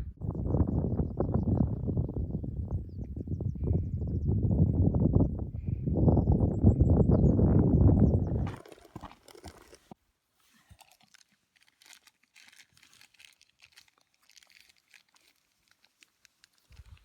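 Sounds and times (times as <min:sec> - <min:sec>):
faint crackling and rustling: 0:08.2 - 0:17.0.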